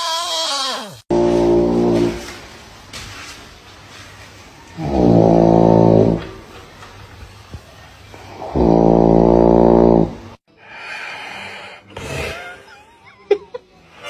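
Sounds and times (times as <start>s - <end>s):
loud snoring: 4.8s - 6.3s, 8.2s - 10.3s.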